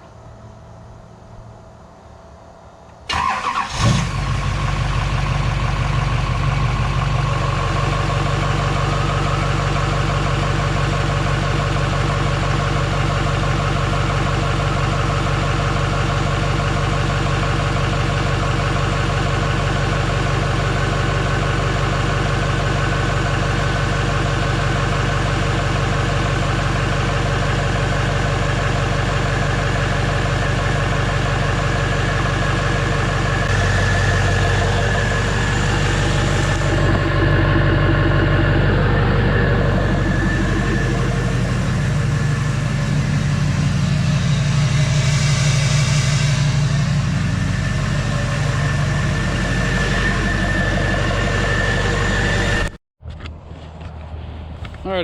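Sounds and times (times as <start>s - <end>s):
truck engine idling: 3.0s - 52.8s
faint whine rising in pitch: 27.8s - 52.8s.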